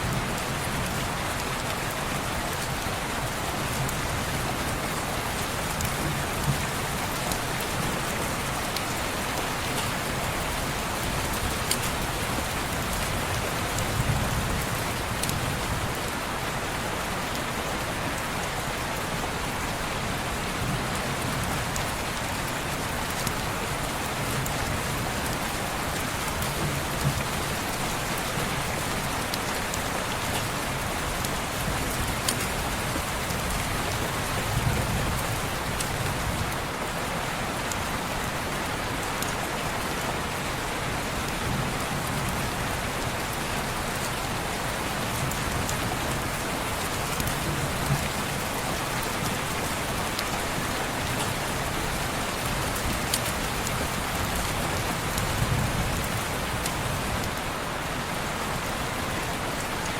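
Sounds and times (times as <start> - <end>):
rain on window glass: 41.2 - 58.6.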